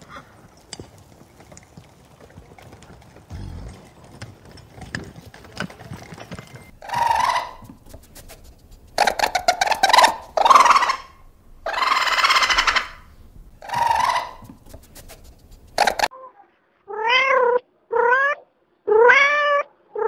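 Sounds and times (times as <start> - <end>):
animal harsh raspy calls: 3.3 - 4.0, 6.7 - 18.4.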